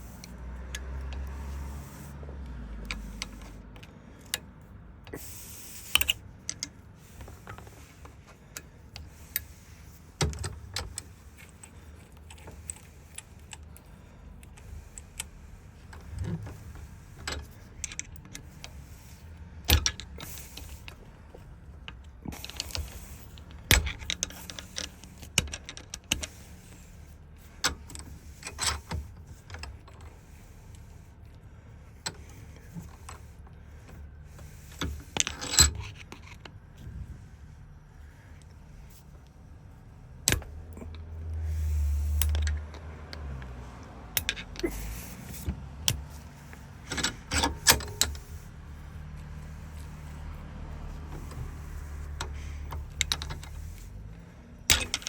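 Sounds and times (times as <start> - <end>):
small metallic clicks and clinks: 40.2 - 55.0.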